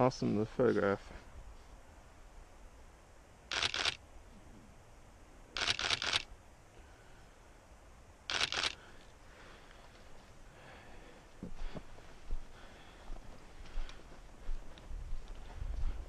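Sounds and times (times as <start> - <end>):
camera shutter clicks: 3.5 - 4.0, 5.6 - 6.3, 8.3 - 8.8.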